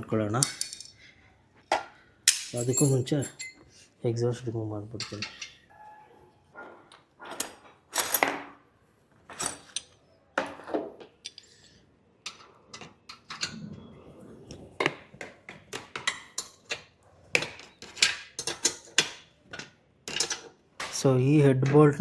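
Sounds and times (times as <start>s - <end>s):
hand tools clinking on metal: 2.3s - 3.6s, 4.9s - 5.6s, 17.6s - 19.2s, 20.1s - 22.0s.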